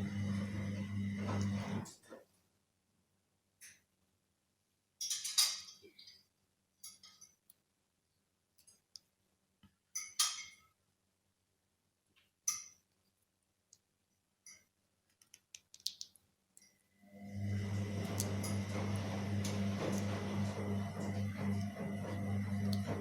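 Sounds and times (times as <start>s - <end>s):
small tools clicking and clinking: 5.0s - 6.2s, 6.8s - 7.5s.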